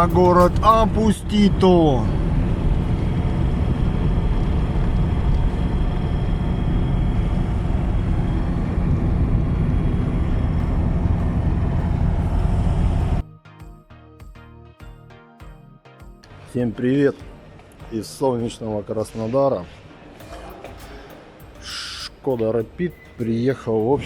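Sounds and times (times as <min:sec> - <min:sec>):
car engine and road noise: 0:00.0 - 0:13.2.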